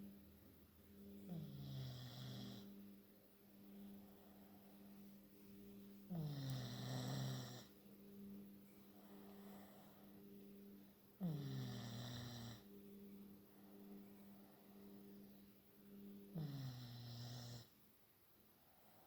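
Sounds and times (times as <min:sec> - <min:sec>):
pet snoring with wheezy hiss: 0:01.0 - 0:03.0, 0:03.7 - 0:17.8.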